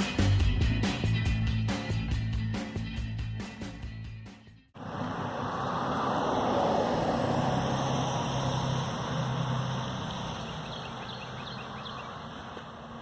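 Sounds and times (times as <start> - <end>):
rushing noise with low hum: 4.8 - 13.0
faint bird chirps: 9.3 - 13.0.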